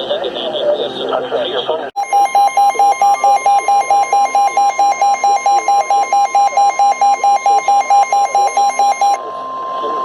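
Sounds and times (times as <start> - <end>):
loud pulsing beep: 2.0 - 10.0
steady high alert tone: 2.0 - 10.0.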